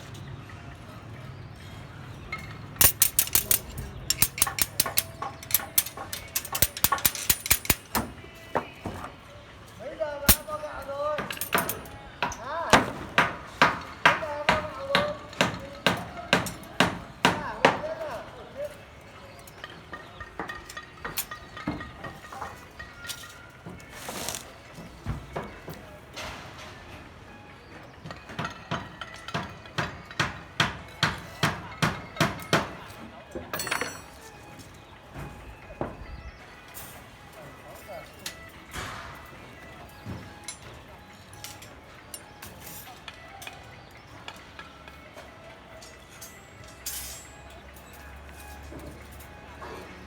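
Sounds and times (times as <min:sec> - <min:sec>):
metal rebar clinking and knocking: 0:02.3 - 0:09.2, 0:10.2 - 0:18.0, 0:19.5 - 0:24.5, 0:28.2 - 0:34.4
metallic clinks of steel bar: 0:02.8 - 0:08.2, 0:10.3 - 0:12.3, 0:33.5 - 0:34.3, 0:45.9 - 0:48.1.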